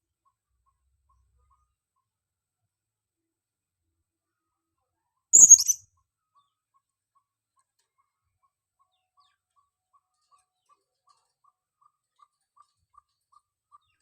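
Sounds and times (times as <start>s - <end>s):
parrot calling: 5.4s - 5.8s.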